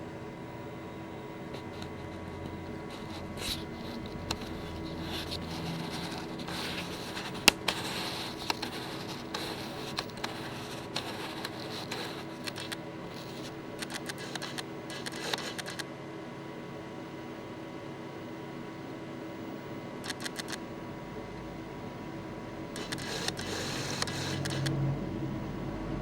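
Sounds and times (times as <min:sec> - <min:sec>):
autofocus motor whirring: 0:01.5 - 0:15.8, 0:22.7 - 0:24.9.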